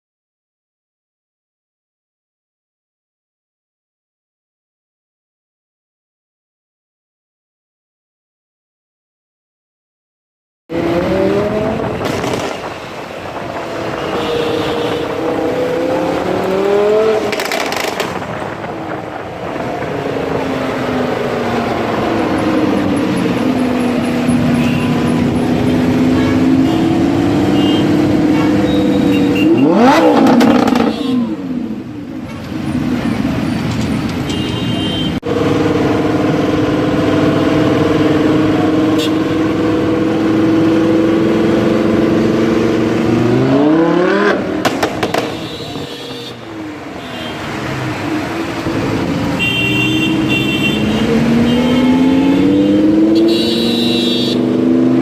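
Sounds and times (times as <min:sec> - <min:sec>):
sports car engine revving: 0:10.7 - 0:18.6, 0:19.6 - 0:31.7, 0:35.2 - 0:45.5, 0:47.5 - 0:55.0.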